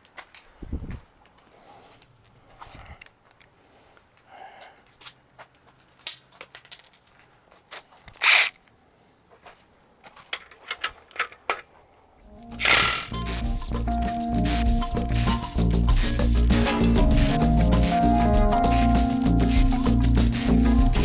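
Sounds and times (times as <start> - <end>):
metal tools clicking and knocking: 8.1 - 8.8
background music with bass: 12.3 - 21.0.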